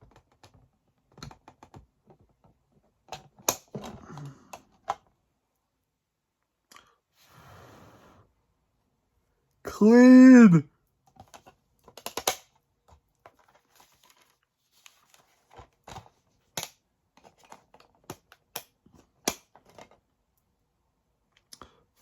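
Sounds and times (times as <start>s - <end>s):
plastic case clicks and snaps: 11.3s - 12.5s, 15.9s - 19.9s.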